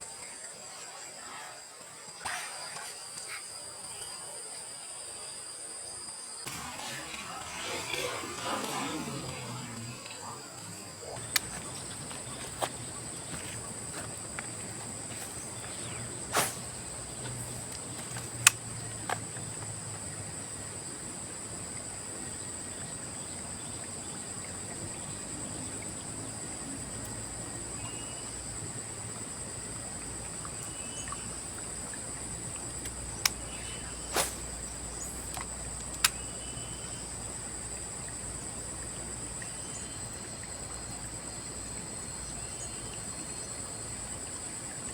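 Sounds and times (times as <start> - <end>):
crickets chirping: 0.0 - 44.9
sharp clicks: 6.5 - 14.5, 15.2 - 19.2.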